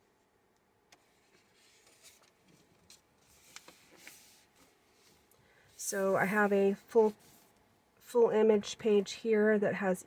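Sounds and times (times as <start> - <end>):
paper pages rustling: 0.9 - 7.7.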